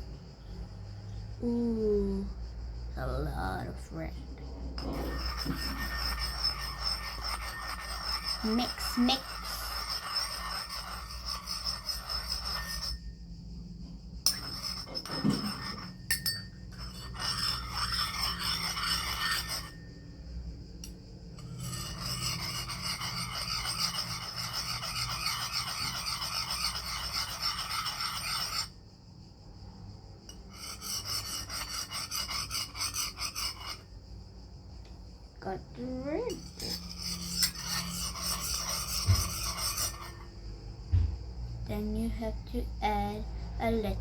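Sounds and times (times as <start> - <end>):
spoon scraping bowl while stirring: 4.5 - 13.1, 14.2 - 19.9, 20.8 - 28.7, 30.3 - 33.9, 36.2 - 40.4.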